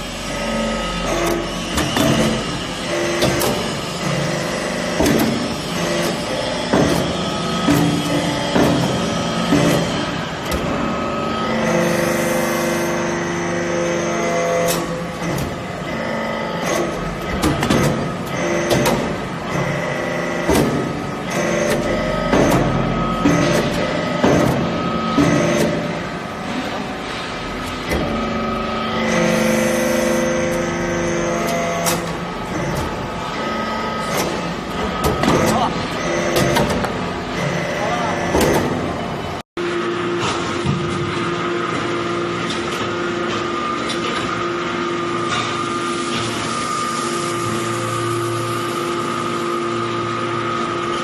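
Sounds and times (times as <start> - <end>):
hydraulic baler motor humming: 0.0 - 51.0.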